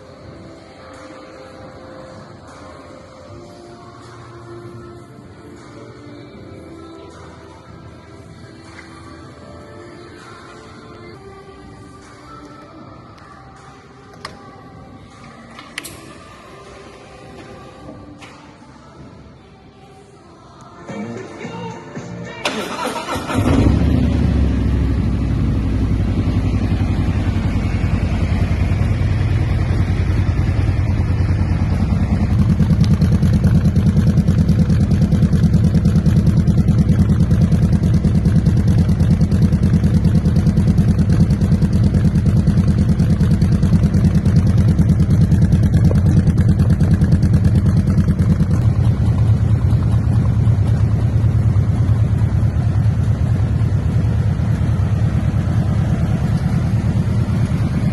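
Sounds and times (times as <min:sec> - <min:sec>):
motorcycle engine idling: 0:22.8 - 0:57.9.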